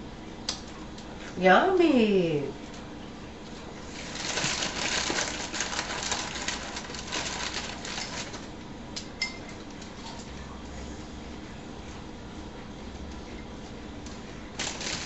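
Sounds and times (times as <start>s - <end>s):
bird crunching a cracker: 4.0s - 8.5s.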